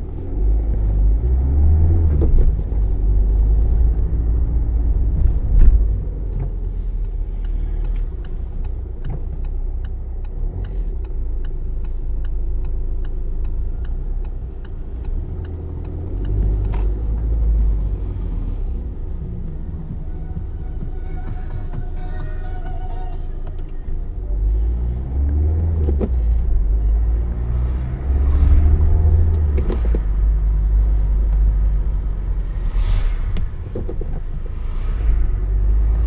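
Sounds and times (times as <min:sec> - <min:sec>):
car engine and road rumble: 0:00.0 - 0:36.0
regular light ticking: 0:07.0 - 0:17.2
heavy thump: 0:31.1 - 0:35.8.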